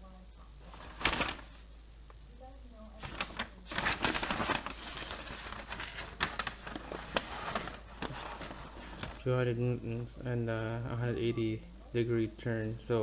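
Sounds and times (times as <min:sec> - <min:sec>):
crinkling rustling handling noise: 0:00.7 - 0:01.6, 0:03.0 - 0:09.3.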